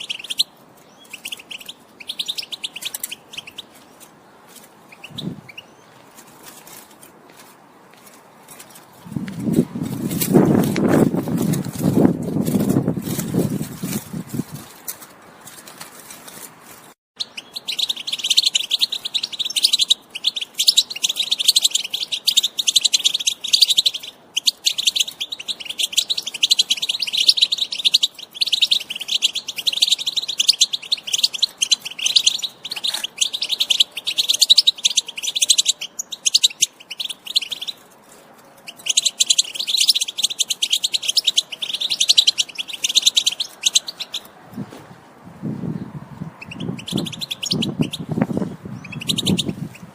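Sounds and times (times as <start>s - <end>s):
goldfinch twittering song: 0.0s - 4.0s, 4.9s - 6.0s, 17.2s - 37.8s, 38.6s - 44.3s, 46.3s - 49.9s.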